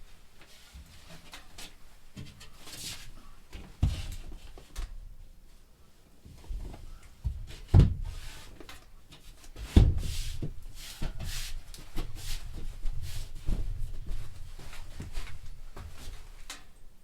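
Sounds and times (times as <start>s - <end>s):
drywall scraping and knocking: 7.2s - 16.2s.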